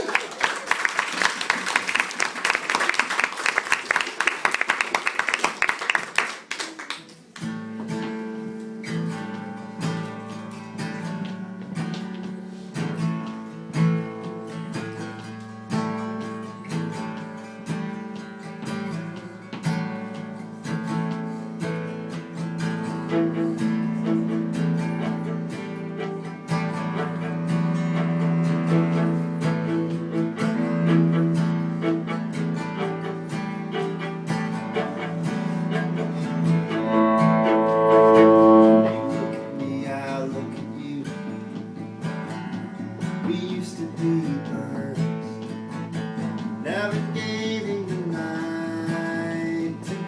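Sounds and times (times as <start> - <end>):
audience applause: 0.0 - 7.2
acoustic guitar playing: 7.4 - 50.0.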